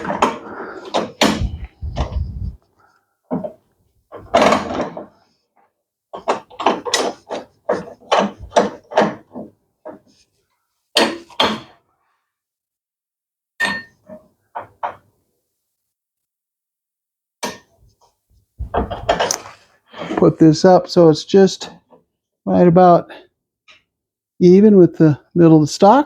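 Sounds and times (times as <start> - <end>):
metal and wood clunks: 0.0 - 2.6, 3.3 - 5.3, 6.2 - 10.1, 18.6 - 20.1.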